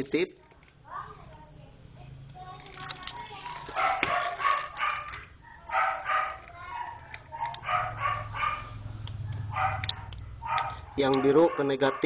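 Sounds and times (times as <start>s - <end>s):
dog barking: 3.7s - 12.0s.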